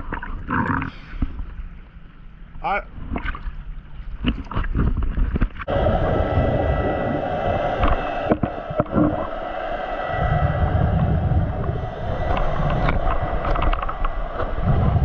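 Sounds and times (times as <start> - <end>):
water splashing around a camera: 2.9 - 15.0
underwater rushing noise: 5.0 - 15.0
faint steady whine: 5.6 - 15.0.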